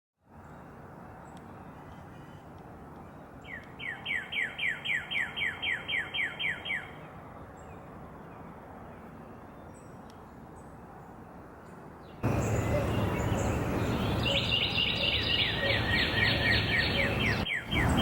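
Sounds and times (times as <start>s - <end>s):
outdoor background hiss: 0.2s - 18.0s
songbird whistling: 3.5s - 7.0s, 12.3s - 18.0s.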